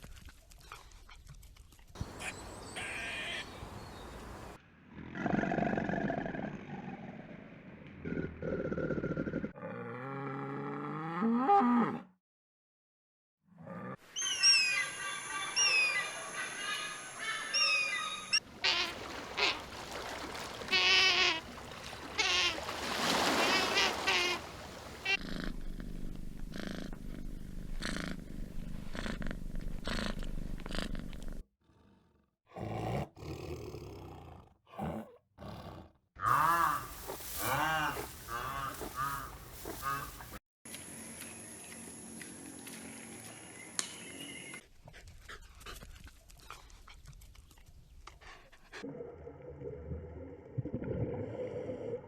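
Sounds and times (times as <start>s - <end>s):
animal calls: 14.1s - 25.2s, 36.2s - 40.4s.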